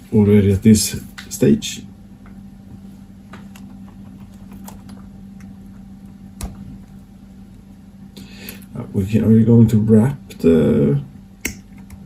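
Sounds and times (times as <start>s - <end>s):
low steady hum: 0.0s - 12.0s
wires clicking and rustling: 3.3s - 7.7s.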